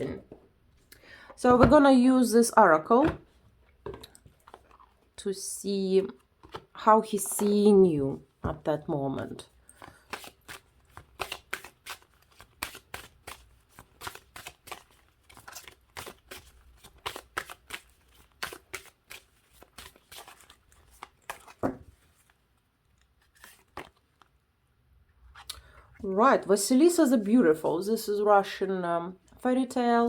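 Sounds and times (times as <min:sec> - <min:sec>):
cards being shuffled: 0:09.7 - 0:24.3.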